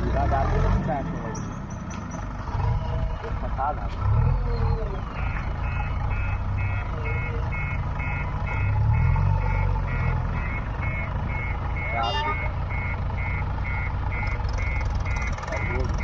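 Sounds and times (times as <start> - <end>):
diesel engine running: 0.0 - 16.0
reversing alarm beeping: 4.2 - 16.0.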